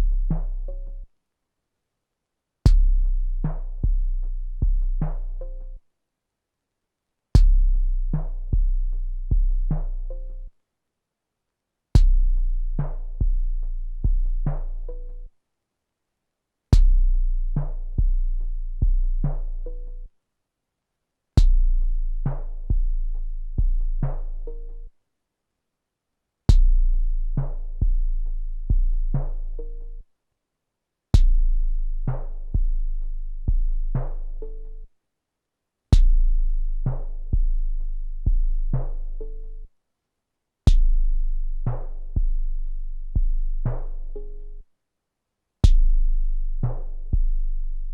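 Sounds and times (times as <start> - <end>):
deep booming kick drums: 2.7 - 5.2, 7.4 - 9.9, 12.0 - 13.5, 14.1 - 14.6, 16.8 - 18.2, 21.4 - 23.0, 26.5 - 28.1, 31.2 - 32.8, 36.0 - 37.6, 38.3 - 39.0, 40.7 - 42.5, 45.6 - 47.4.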